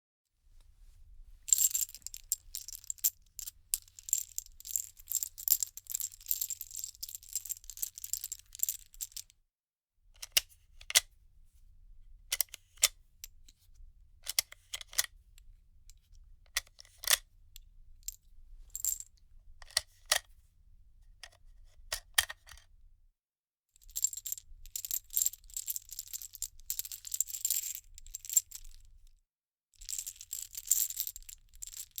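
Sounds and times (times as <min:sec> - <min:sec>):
metal cartridges jingling: 0:01.5 - 0:09.2.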